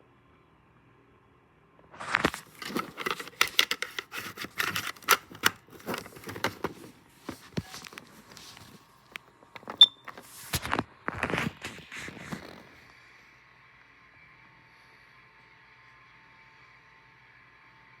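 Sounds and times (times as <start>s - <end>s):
objects being handled: 2.0s - 12.8s.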